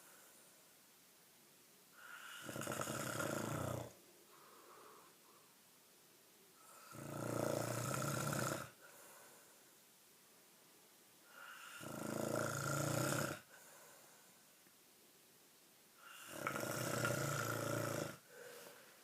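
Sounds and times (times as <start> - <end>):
person snoring heavily: 2.0 - 4.0, 6.6 - 8.8, 11.3 - 13.5, 16.0 - 18.7
soft breath: 4.2 - 5.7, 8.7 - 9.8, 13.4 - 14.6, 18.2 - 19.0.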